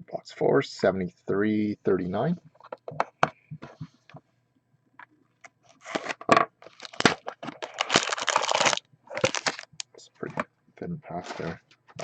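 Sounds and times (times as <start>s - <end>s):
wrapper tearing and crinkling: 5.8s - 9.8s.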